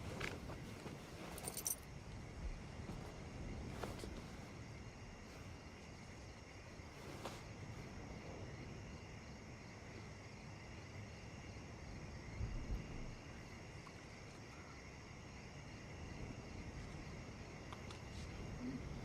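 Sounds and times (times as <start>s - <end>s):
crickets chirring: 0.0s - 19.0s.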